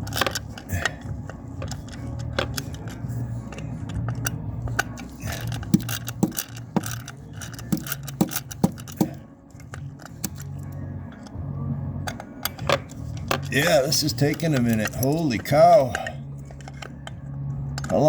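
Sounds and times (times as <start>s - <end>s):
low steady hum: 0.0s - 18.0s
hand tool clicking: 4.8s - 9.2s.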